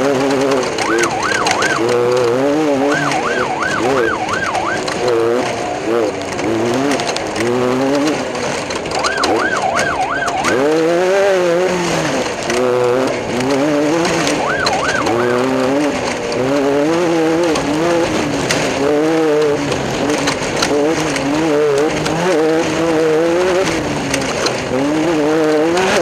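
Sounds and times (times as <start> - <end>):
race car engines revving: 0.0 - 26.0
siren wailing: 0.4 - 5.9, 8.8 - 11.7, 13.9 - 16.2.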